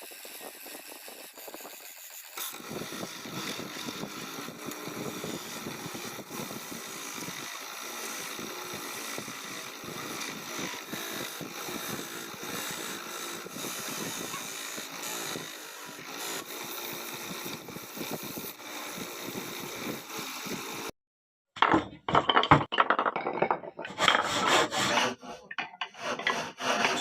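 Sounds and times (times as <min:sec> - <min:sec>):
tool scraping wood: 0:00.0 - 0:20.9, 0:21.6 - 0:27.0
woodworking power tool running: 0:01.9 - 0:20.9, 0:23.9 - 0:27.0.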